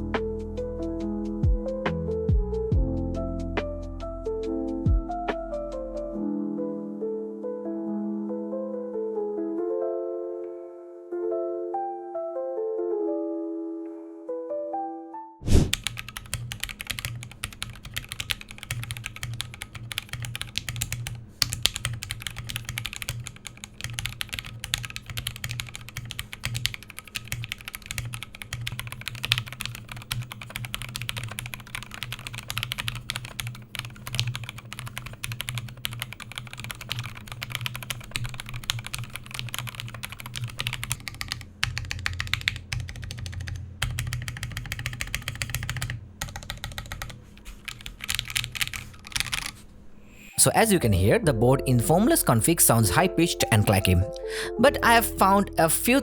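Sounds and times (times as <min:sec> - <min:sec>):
mechanical keyboard typing: 0:15.5 - 0:49.6.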